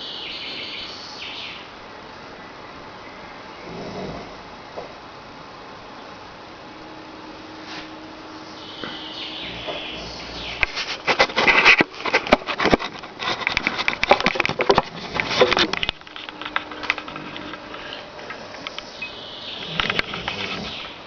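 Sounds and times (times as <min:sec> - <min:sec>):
man snoring: 0:03.6 - 0:04.4.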